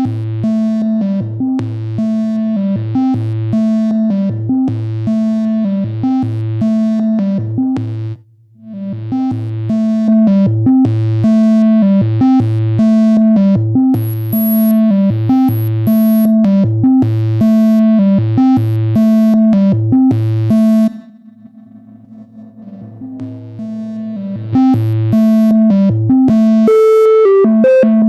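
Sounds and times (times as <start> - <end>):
buzzy synthesizer sequence: 17.2 - 28.0.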